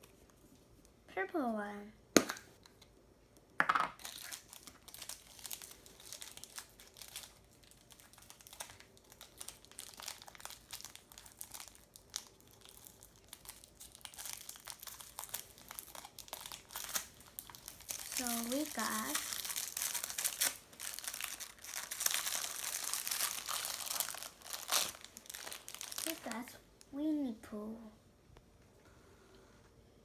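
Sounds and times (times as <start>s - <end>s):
wrapping crinkling and tearing: 4.0s - 26.9s.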